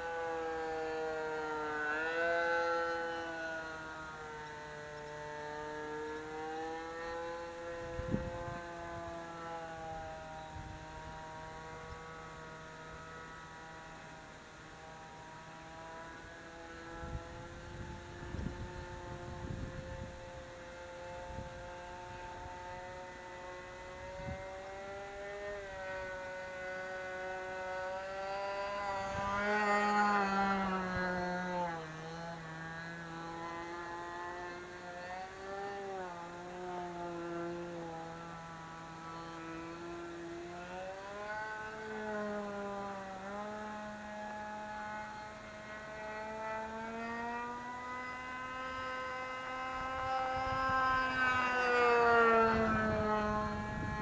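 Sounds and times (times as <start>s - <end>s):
model airplane engine in flight: 0.0s - 54.0s.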